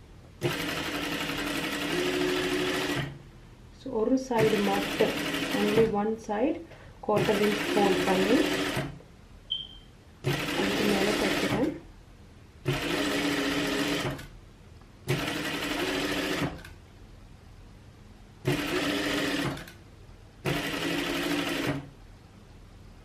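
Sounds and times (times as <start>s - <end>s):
sewing machine stitching: 0.4s - 3.2s, 4.4s - 6.0s, 7.1s - 9.0s, 10.2s - 11.8s, 12.6s - 14.3s, 15.1s - 16.7s, 18.4s - 19.8s, 20.4s - 21.9s.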